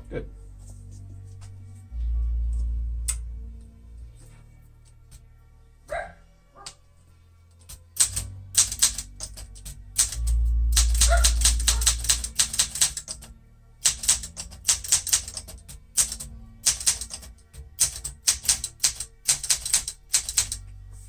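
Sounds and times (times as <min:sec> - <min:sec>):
manual typewriter keystrokes: 0:07.7 - 0:20.6.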